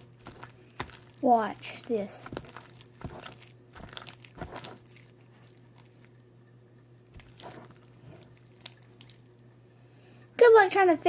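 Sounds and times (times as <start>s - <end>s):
slime squishing by hand: 0.0s - 6.2s, 7.0s - 9.4s.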